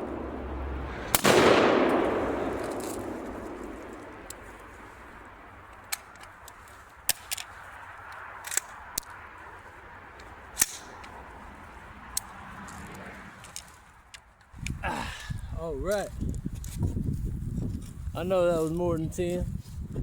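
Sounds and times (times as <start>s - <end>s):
rifle shots cracking: 0.0s - 5.1s.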